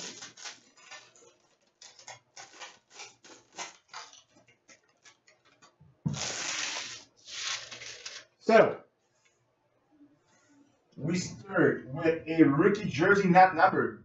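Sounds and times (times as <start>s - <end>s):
card pack ripping: 0.0s - 4.4s, 6.1s - 8.4s
card pack clicking and crinkling: 0.0s - 8.3s.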